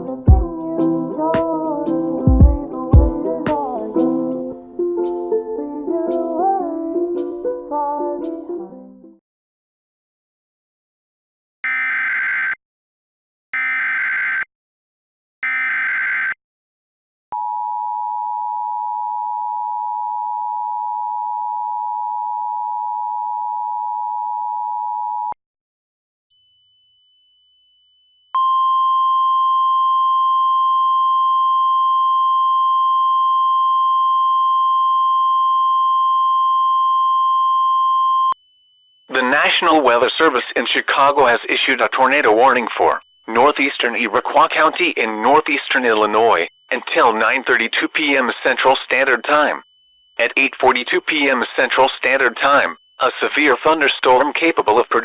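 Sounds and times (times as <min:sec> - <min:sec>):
steady single-pitch warning tone: 0:17.4 - 0:25.3, 0:26.4 - 0:55.0
two-tone attention signal: 0:28.4 - 0:39.8
data bursts: 0:38.5 - 0:55.0.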